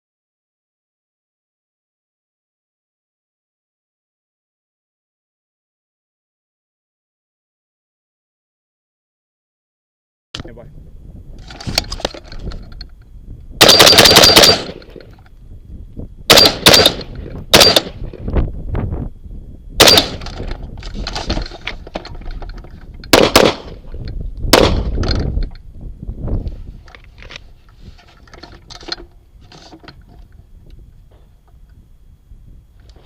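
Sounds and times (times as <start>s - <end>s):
rifle gunfire: 13.6s - 15.0s, 16.3s - 18.0s, 19.8s - 20.5s, 23.1s - 23.9s, 24.5s - 25.0s.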